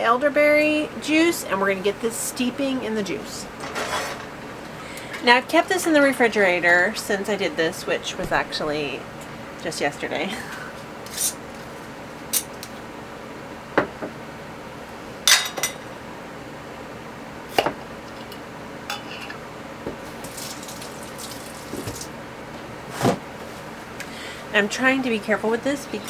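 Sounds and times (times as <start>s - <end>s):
kitchen utensils handled: 3.6s - 4.4s, 11.1s - 11.4s, 20.1s - 22.1s
glass containers clinking: 15.3s - 15.9s, 18.1s - 19.4s, 20.2s - 22.1s.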